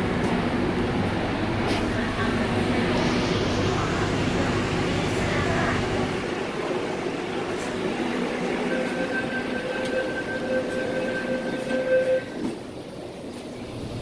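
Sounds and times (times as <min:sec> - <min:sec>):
train running on track: 0:00.0 - 0:14.0
steady high tone: 0:01.3 - 0:12.4.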